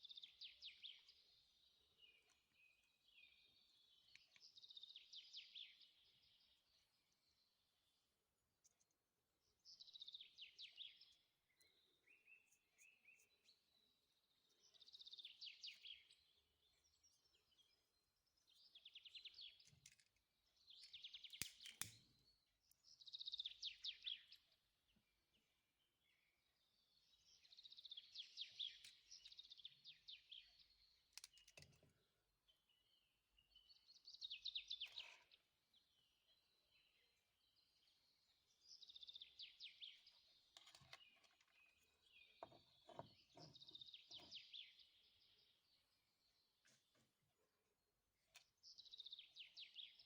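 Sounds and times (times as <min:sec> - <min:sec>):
faint songbird trills: 0:09.5 - 0:47.1, 0:48.2 - 0:50.0.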